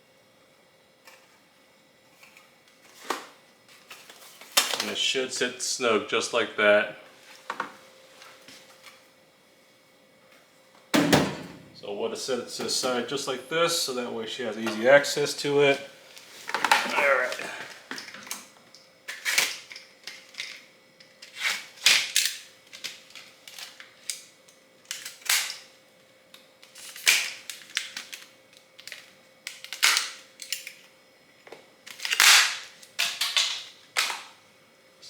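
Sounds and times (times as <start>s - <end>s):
plastic packaging snapping: 3.9s - 4.9s, 21.2s - 25.6s, 26.6s - 30.9s, 31.8s - 34.3s.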